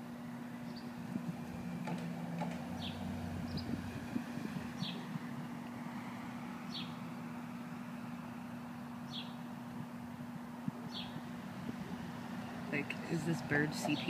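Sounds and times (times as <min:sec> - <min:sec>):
bird chirping: 0:00.6 - 0:01.0, 0:04.8 - 0:05.1, 0:06.7 - 0:07.0, 0:08.8 - 0:09.4, 0:10.9 - 0:11.2.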